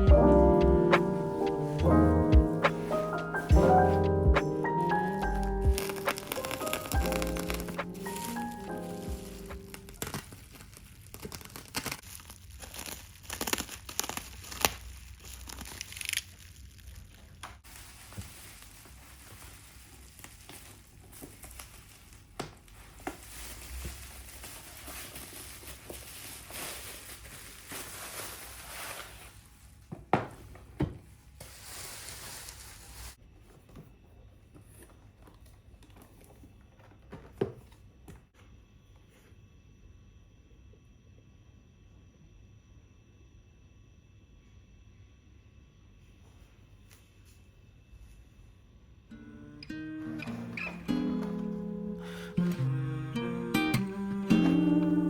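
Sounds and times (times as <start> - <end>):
packaging crinkling and tearing: 4.6 - 29.6.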